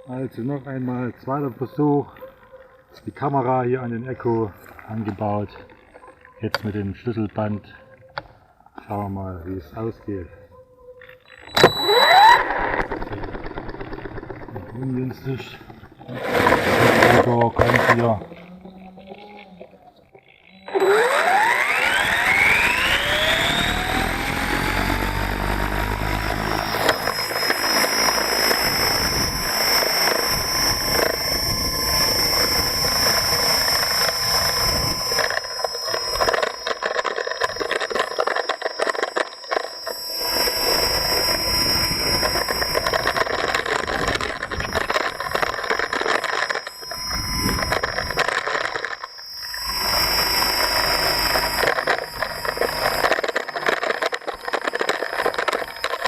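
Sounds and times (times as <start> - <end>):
model helicopter motor whine: 11.2 - 19.6, 20.4 - 56.0
rotor blades rushing: 11.5 - 18.1, 20.6 - 56.0.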